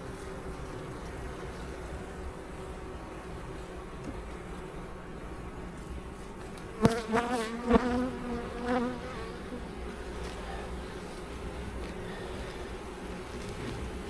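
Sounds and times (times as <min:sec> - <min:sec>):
honeybees buzzing: 0:00.0 - 0:14.0
single bee buzzing close by: 0:06.8 - 0:14.0.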